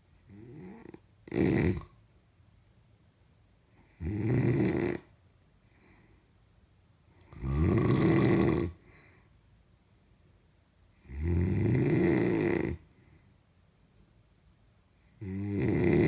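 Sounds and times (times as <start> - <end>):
loud snoring: 0.3 - 2.0, 3.8 - 5.1, 7.3 - 8.8, 11.0 - 12.9, 15.1 - 16.0.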